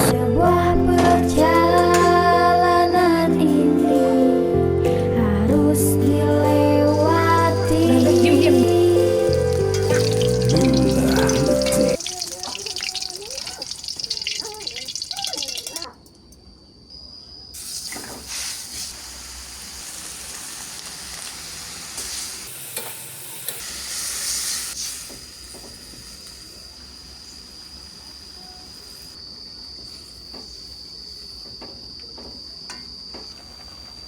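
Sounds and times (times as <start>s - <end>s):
food sizzling in hot oil: 7.3s - 16.0s, 17.6s - 29.2s.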